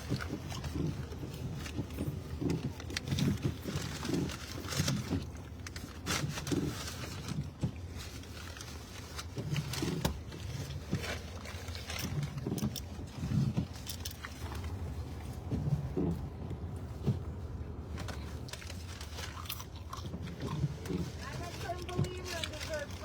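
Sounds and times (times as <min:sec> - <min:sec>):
car interior hum: 0:12.2 - 0:23.0
person chewing food: 0:18.4 - 0:21.9.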